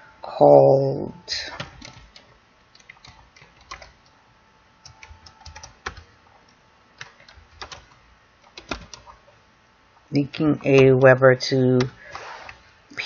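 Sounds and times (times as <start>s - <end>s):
typing on keyboard: 1.5s - 4.0s, 4.8s - 6.1s, 7.0s - 9.2s.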